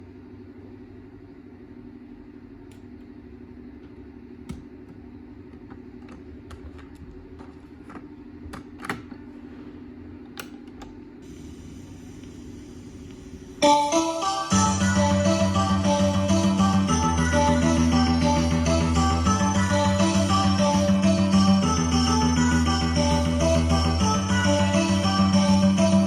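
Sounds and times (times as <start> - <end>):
low electrical hum: 0.0 - 26.0.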